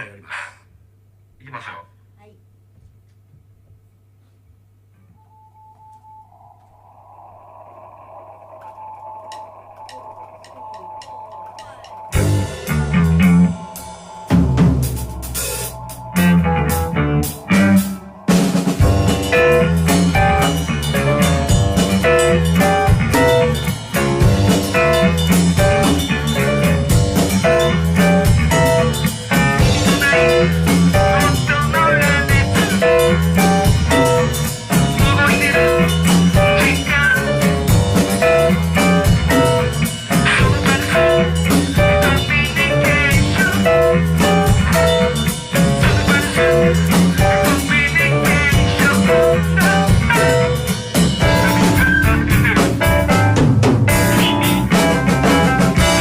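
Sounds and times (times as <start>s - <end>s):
guitar: 8.4s - 56.0s
drum kit beat: 9.3s - 56.0s
band playing: 9.4s - 56.0s.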